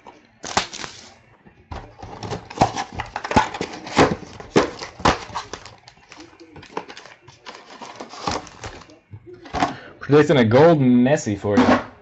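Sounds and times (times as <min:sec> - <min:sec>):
card packs crinkling: 0:00.4 - 0:01.2, 0:01.9 - 0:09.0.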